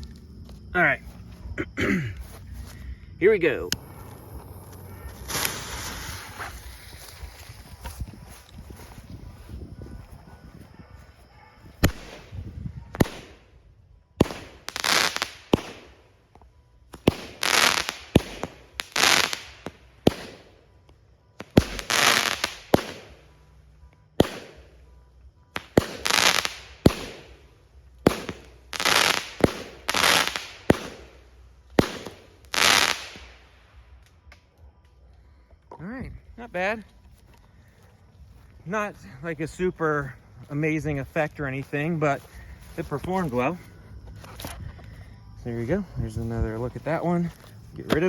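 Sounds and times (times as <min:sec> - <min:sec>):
firework bursts: 0:03.7 - 0:07.0, 0:14.2 - 0:16.0, 0:16.9 - 0:20.6, 0:21.4 - 0:23.4, 0:24.2 - 0:24.8, 0:25.6 - 0:27.4, 0:28.0 - 0:33.5
firework launch thumps: 0:03.8 - 0:06.8.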